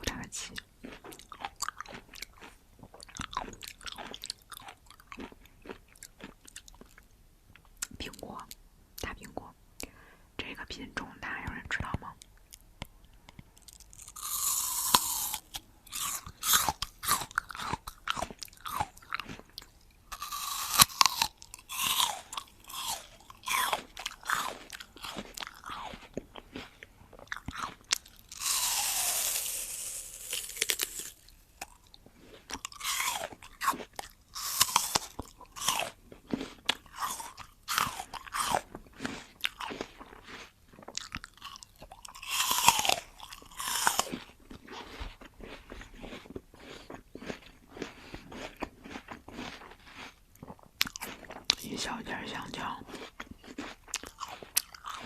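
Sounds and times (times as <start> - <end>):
wet chewing: 0.0 - 8.0, 12.3 - 55.0
apple crunching bites: 0.1 - 7.0, 13.4 - 51.7, 52.4 - 55.0.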